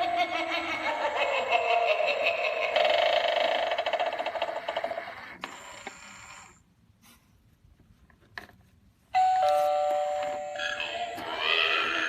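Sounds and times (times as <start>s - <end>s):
electronic doorbell chime: 9.2s - 11.2s.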